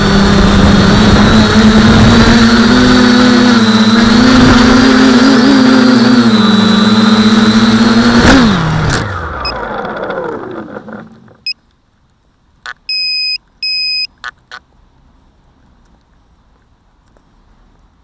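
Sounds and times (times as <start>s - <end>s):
drone motors buzzing: 0.0s - 11.6s
short electronic beeps: 12.7s - 14.4s.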